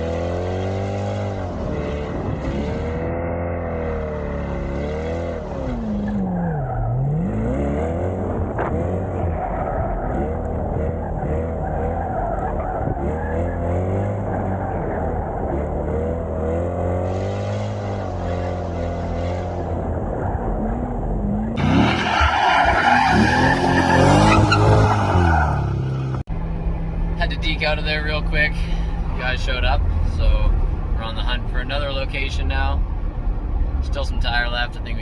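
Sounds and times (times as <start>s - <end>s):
car engine revving: 0.0s - 35.0s
tires squealing: 4.9s - 26.2s.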